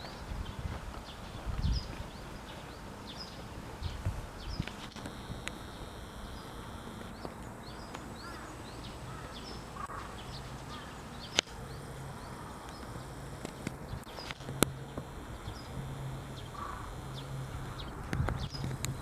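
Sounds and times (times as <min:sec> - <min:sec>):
faint low hum: 0:00.0 - 0:19.0
small birds chirping: 0:00.0 - 0:19.0
high-pitched buzz: 0:04.4 - 0:19.0
sharp click: 0:04.6 - 0:08.5, 0:09.4 - 0:19.0.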